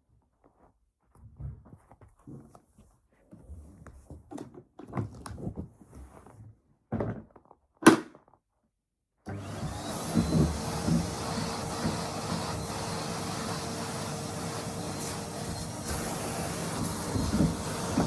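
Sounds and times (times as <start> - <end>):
vacuum cleaner running: 9.3 - 18.0
thuds and knocks of handling: 16.7 - 18.0.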